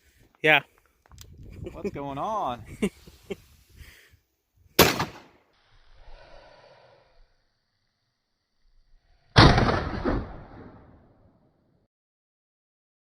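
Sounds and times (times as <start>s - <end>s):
gunshots: 4.8s - 5.4s, 9.4s - 11.0s.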